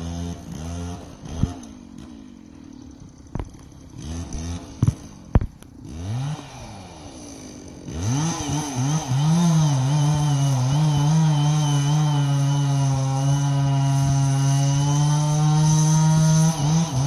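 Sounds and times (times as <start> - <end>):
chainsaw engine revving: 0.0 - 17.0.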